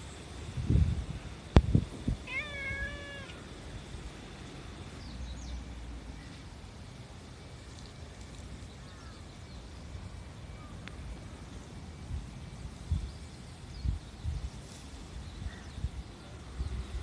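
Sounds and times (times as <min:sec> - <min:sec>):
cat meowing: 0:02.2 - 0:03.4.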